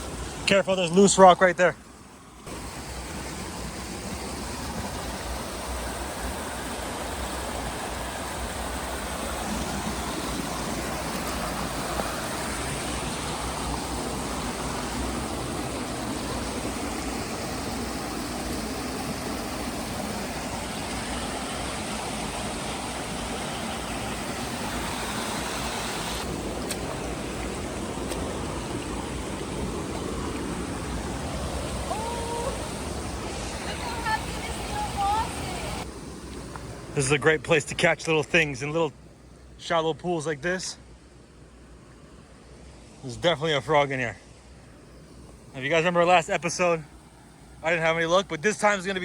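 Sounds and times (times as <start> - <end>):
river water rushing: 0.0 - 37.2.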